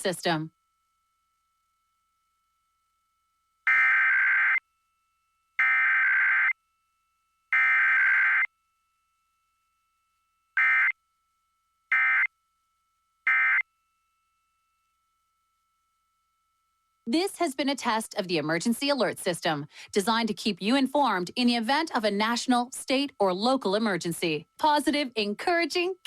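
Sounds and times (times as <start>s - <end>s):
warbling data tone bursts: 3.7s - 4.6s, 7.6s - 8.5s.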